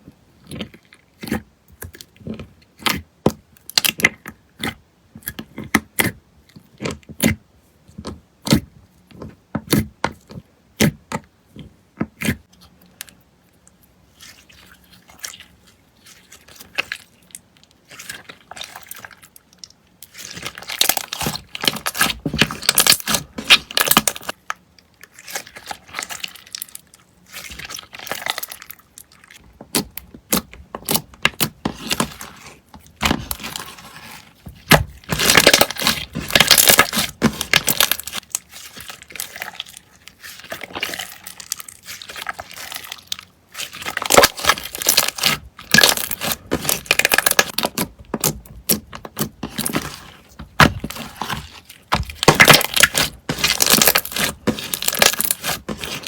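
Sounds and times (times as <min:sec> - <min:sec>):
slime crackling and popping: 0:20.0 - 0:24.4, 0:34.6 - 0:56.0.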